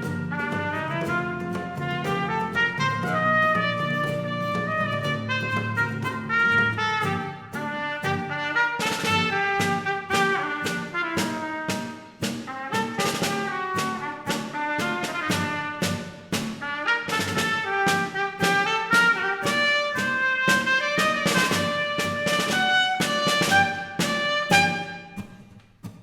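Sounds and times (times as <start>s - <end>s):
brass ensemble playing: 0.0s - 25.2s
percussion strokes: 0.0s - 25.5s.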